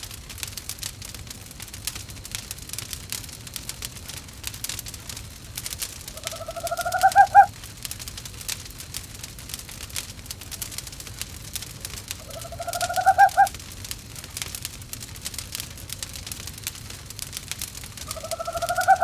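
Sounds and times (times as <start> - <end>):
wood fire crackling: 0.0 - 19.0
owl call: 6.1 - 7.5, 12.2 - 13.5, 18.0 - 19.0.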